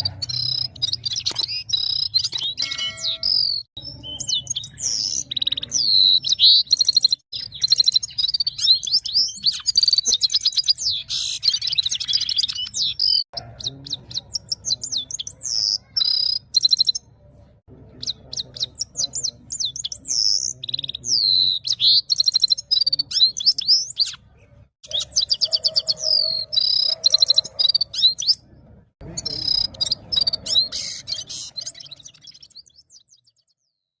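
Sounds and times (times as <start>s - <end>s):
goldfinch singing twittering trills: 0.0s - 17.0s, 29.0s - 33.6s.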